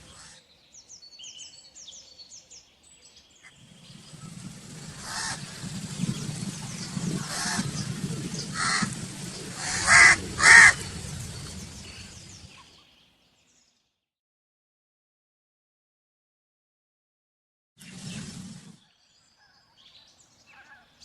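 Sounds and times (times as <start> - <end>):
low background rumble: 3.5 - 12.7
crows cawing: 5.0 - 5.5, 7.2 - 7.7, 8.5 - 9.0, 9.6 - 10.9.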